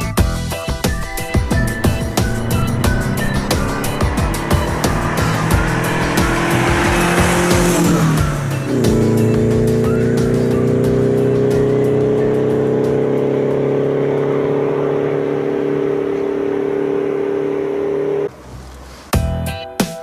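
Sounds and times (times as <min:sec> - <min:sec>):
music with sharp beats: 0:00.0 - 0:13.3
loud engine-like drone: 0:00.8 - 0:18.0.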